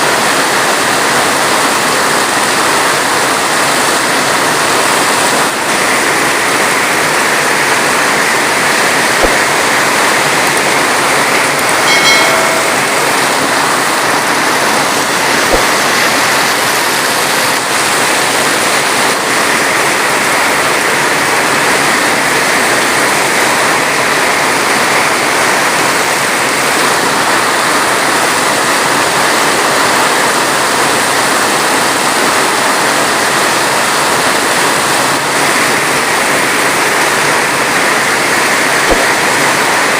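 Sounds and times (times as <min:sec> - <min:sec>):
heavy rain falling: 0:00.0 - 0:39.9
brief pitched sound: 0:11.8 - 0:13.4.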